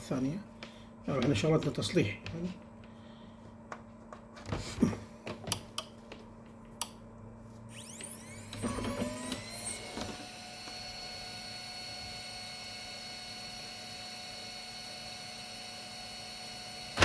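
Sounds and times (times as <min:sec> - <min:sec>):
printer motor whirring: 0:07.7 - 0:17.0.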